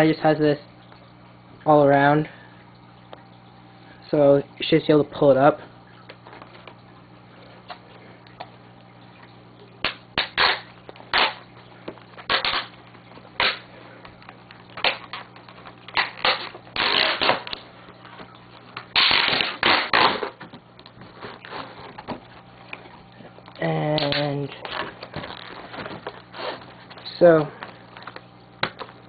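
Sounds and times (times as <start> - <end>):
packaging rustling and scraping: 20.1 - 22.9, 24.6 - 28.2.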